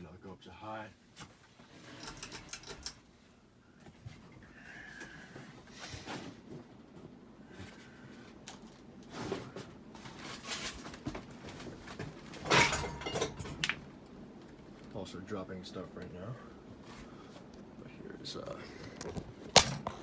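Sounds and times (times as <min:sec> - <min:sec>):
ceiling fan humming: 0:00.0 - 0:20.0
objects dropping with clatters: 0:09.3 - 0:13.9.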